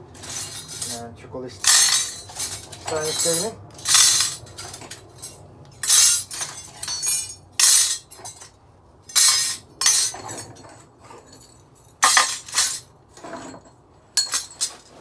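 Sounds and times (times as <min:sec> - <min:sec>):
metal scrap clinking into container: 0:00.1 - 0:01.0, 0:01.6 - 0:08.5, 0:09.1 - 0:15.0.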